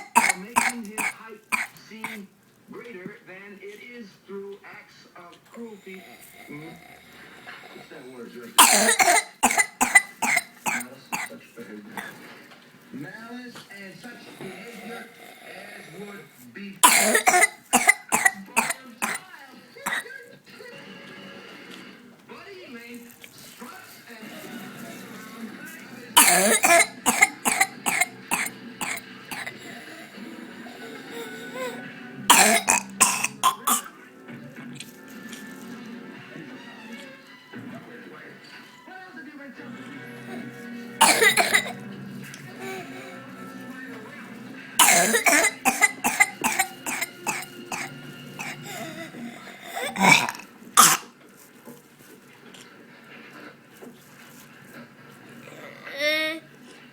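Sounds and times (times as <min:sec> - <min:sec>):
sharp whooping coughs: 0:00.0 - 0:02.2, 0:05.9 - 0:12.2, 0:14.2 - 0:16.2, 0:16.8 - 0:19.3, 0:19.9 - 0:20.2, 0:26.1 - 0:33.9, 0:40.2 - 0:43.5, 0:44.8 - 0:51.1.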